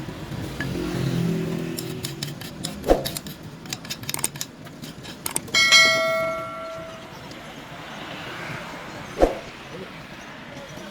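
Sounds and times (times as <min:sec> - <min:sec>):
steel pieces clinking: 0:01.8 - 0:07.1
struck steel ringing: 0:05.5 - 0:07.3.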